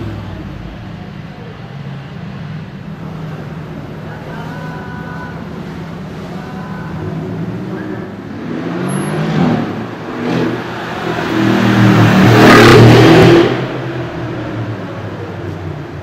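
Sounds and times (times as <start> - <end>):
car engine revving and accelerating: 7.1 - 15.2.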